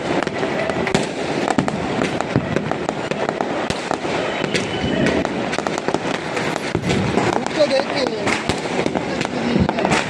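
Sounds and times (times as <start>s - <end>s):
firecrackers cracking and popping: 0.0s - 10.0s.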